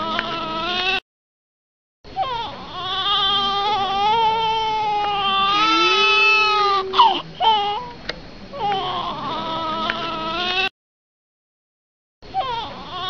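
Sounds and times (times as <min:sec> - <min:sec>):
baby crying: 0:02.2 - 0:08.0, 0:08.6 - 0:10.7, 0:12.3 - 0:13.0.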